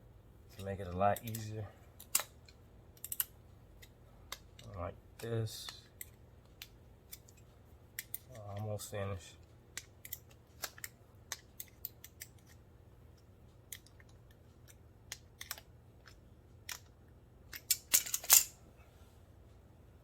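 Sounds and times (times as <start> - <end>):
pliers clicking on metal: 0.5 - 7.4, 8.0 - 8.7, 9.8 - 12.6, 13.7 - 16.9, 17.5 - 18.5.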